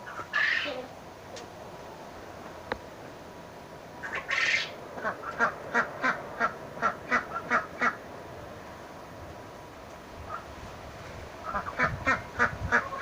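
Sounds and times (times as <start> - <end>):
ducks quacking: 0.0 - 0.9, 4.0 - 8.0, 11.4 - 13.0.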